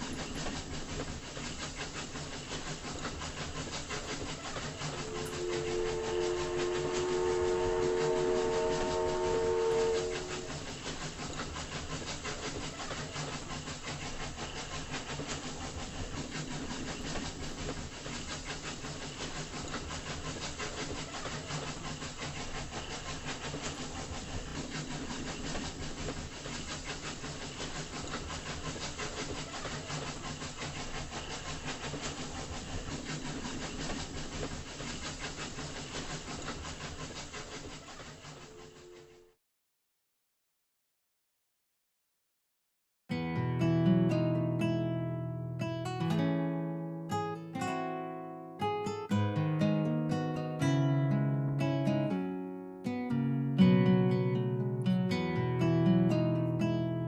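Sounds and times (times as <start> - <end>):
train rumbling and rattling on track: 0.0 - 39.4.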